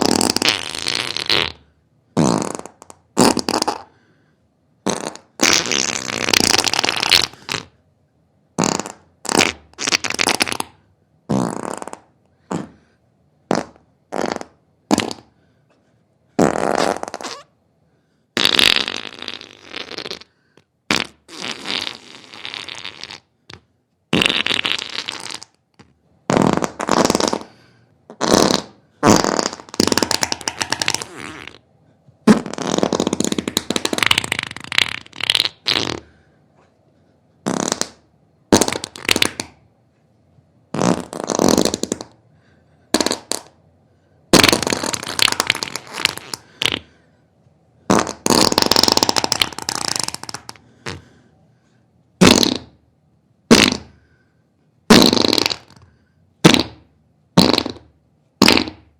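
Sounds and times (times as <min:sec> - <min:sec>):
farts: 0:00.0 - 0:04.0, 0:04.8 - 0:07.8, 0:08.6 - 0:12.9, 0:13.5 - 0:15.4, 0:16.4 - 0:17.6, 0:18.4 - 0:31.6, 0:32.2 - 0:36.2, 0:37.4 - 0:39.6, 0:40.7 - 0:42.2, 0:42.9 - 0:43.6, 0:44.3 - 0:47.0, 0:47.9 - 0:51.2, 0:52.2 - 0:52.8, 0:53.5 - 0:54.1, 0:54.9 - 0:58.9.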